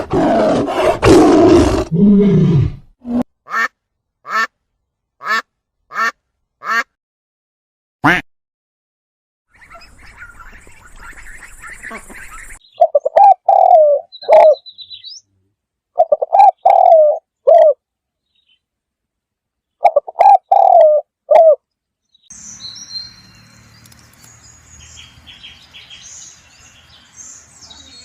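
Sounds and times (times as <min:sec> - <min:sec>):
small birds chirping: 0:09.5 - 0:17.5, 0:18.1 - 0:18.8, 0:21.5 - 0:28.0
bird cooing: 0:12.8 - 0:14.7, 0:16.0 - 0:17.8, 0:19.8 - 0:21.6.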